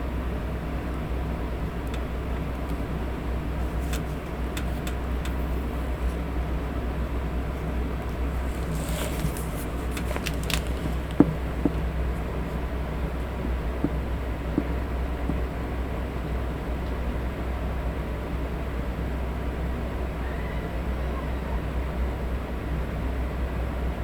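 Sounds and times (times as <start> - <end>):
electric fan running: 0.0 - 24.0
faint rustles: 7.5 - 12.6
light taps: 9.2 - 12.0, 13.2 - 15.5.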